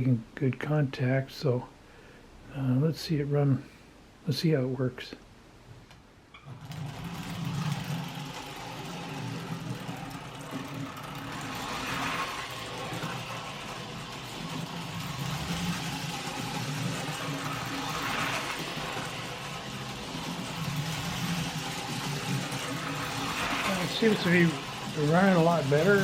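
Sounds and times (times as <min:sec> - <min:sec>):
toy train motor humming and whirring: 0:06.4 - 0:26.0.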